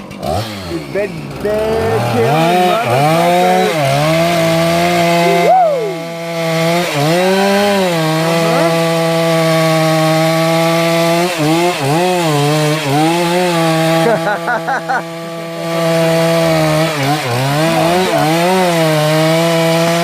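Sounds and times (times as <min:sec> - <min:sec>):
chainsaw cutting wood: 0:00.0 - 0:20.0.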